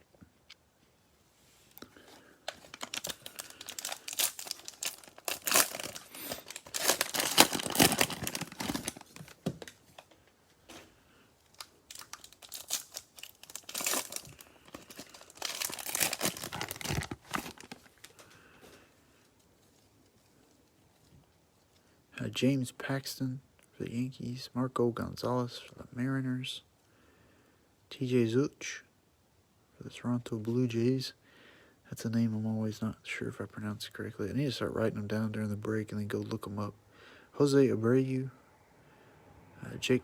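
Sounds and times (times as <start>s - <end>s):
wrapper crinkling and tearing: 2.4s - 10.1s, 11.5s - 18.3s.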